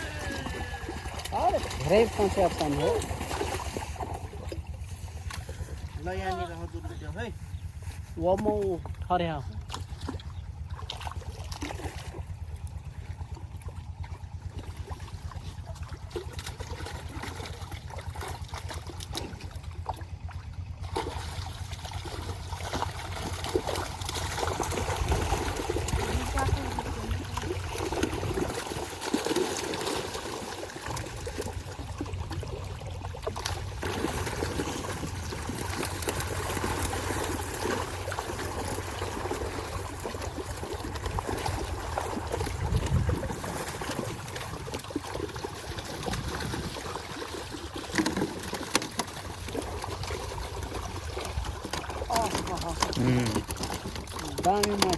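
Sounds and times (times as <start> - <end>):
low rumble: 0.0 - 29.1, 30.2 - 46.9
pond water splashing: 0.0 - 54.9.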